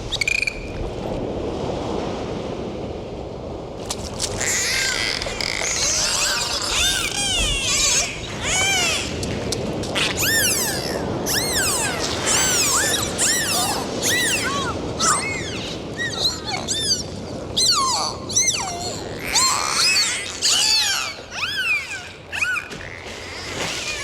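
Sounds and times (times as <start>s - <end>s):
dolphins whistling: 0.1s - 0.7s, 4.6s - 9.2s, 10.0s - 24.0s.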